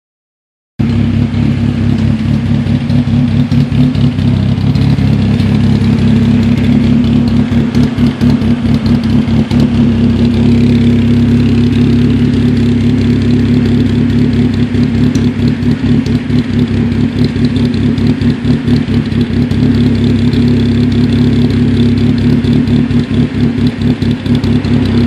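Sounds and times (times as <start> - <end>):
car engine rough idle: 0.8 - 25.0.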